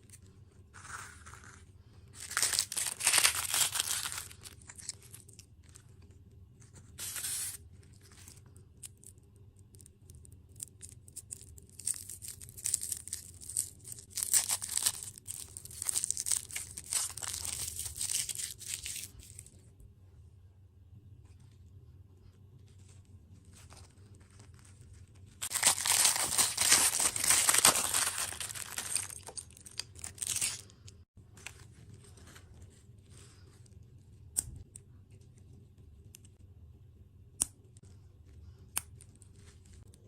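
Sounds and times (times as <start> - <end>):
plastic packaging crinkling and tearing: 2.2 - 5.8, 10.6 - 19.5, 23.5 - 30.8.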